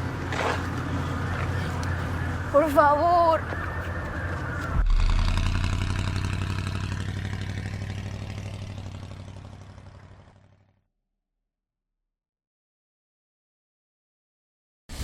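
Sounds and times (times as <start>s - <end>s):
vehicle engine idling: 0.0s - 10.6s.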